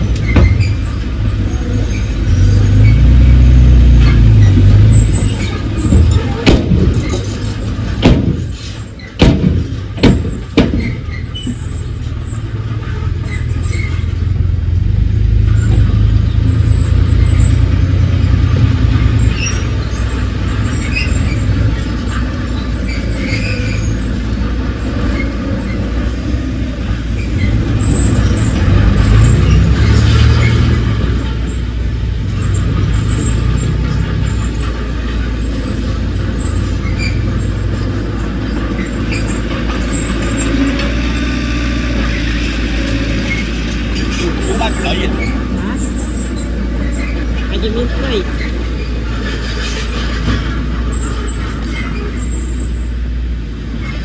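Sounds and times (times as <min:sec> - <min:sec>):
heavy diesel machinery rumbling: 0:00.0 - 0:54.0
sharp knocks: 0:05.8 - 0:11.7.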